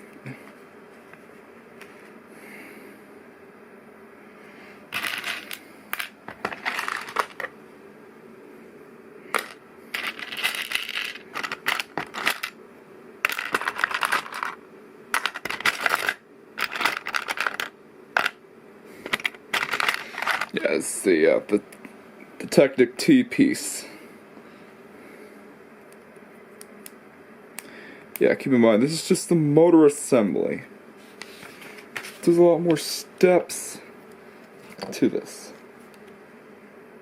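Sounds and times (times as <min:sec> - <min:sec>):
faint steady hum: 0:00.0 - 0:37.0
plastic pieces rattling and clicking: 0:05.0 - 0:07.5, 0:09.4 - 0:12.6, 0:13.3 - 0:14.6, 0:15.2 - 0:18.4, 0:19.0 - 0:20.6.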